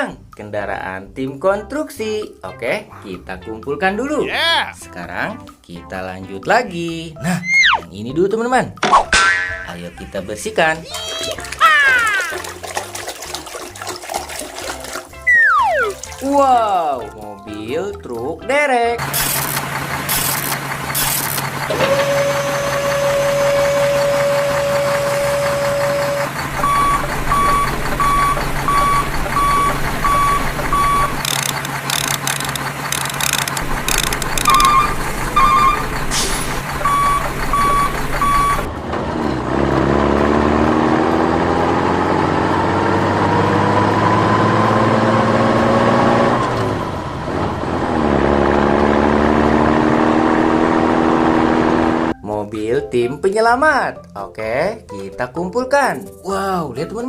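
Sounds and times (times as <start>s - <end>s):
truck engine revving: 19.0s - 52.2s
truck horn tone: 21.4s - 31.2s, 33.6s - 38.7s
reversing beeps: 21.7s - 31.5s, 34.0s - 38.7s
clicks: 24.5s - 35.5s.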